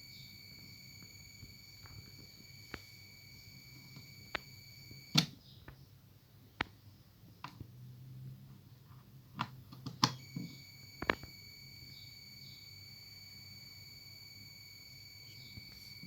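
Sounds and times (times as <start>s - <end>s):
charger high-pitched whine: 10.2s - 16.0s.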